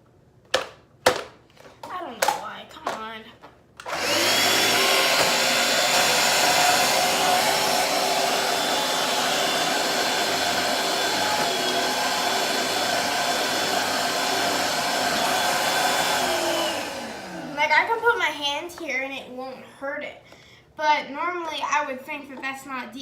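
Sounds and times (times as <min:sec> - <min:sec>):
stick vacuum running: 0:03.8 - 0:17.8.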